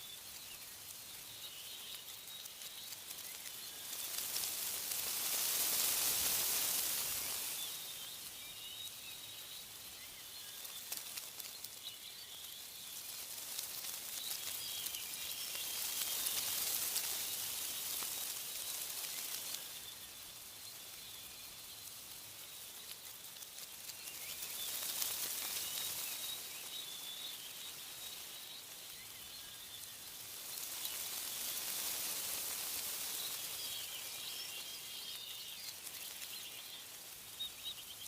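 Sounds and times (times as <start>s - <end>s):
faint bird chirps: 0.0s - 38.0s
wind rustling tree leaves: 0.0s - 38.0s.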